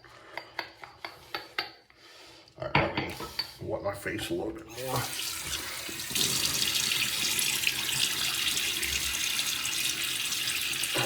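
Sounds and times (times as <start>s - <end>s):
tap running into a sink: 5.0s - 11.0s.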